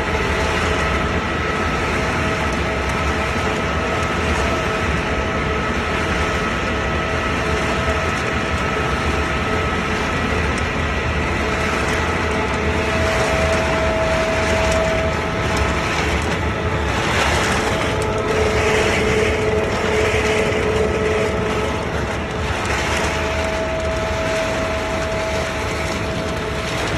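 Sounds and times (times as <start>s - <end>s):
production line machinery running: 0.0s - 26.9s
rush of noise: 0.0s - 26.9s
steady machine whine: 0.0s - 26.9s.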